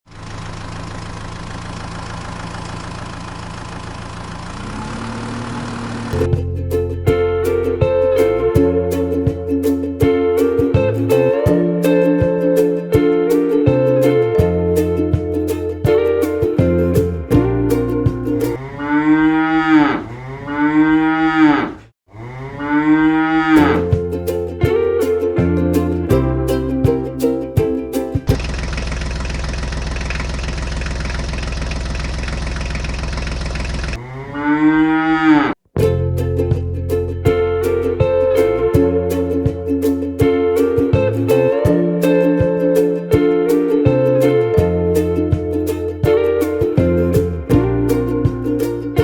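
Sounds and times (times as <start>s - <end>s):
engine idling with low hum: 0.1s - 6.6s, 28.3s - 34.0s
plucked-string music: 6.1s - 18.6s, 23.6s - 28.4s, 35.8s - 49.0s
cow mooing: 18.6s - 23.8s, 34.0s - 35.5s.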